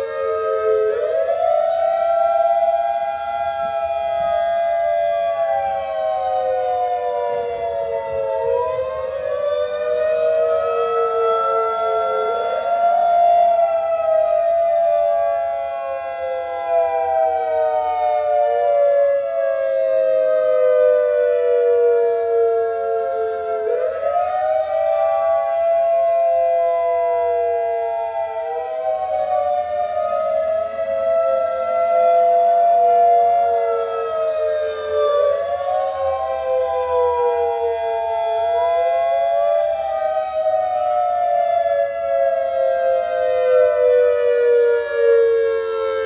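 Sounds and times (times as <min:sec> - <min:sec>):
outdoor warning siren: 0:00.0 - 0:46.0.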